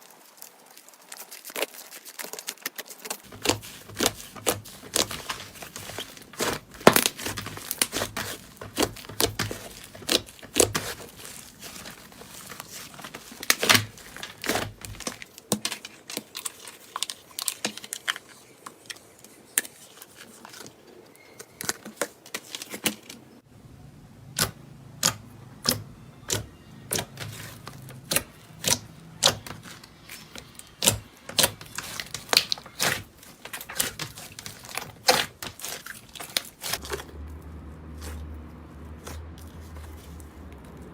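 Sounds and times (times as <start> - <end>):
slime crackling and popping: 0.0 - 18.6, 24.4 - 37.0.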